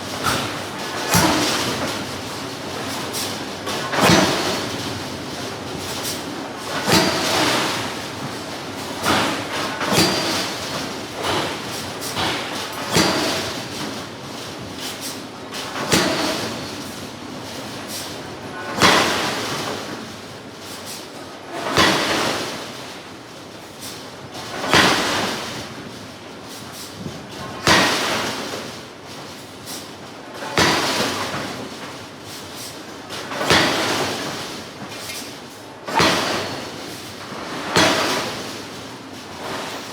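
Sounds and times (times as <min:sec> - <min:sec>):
forging hammer blows on steel: 0:05.7 - 0:14.0.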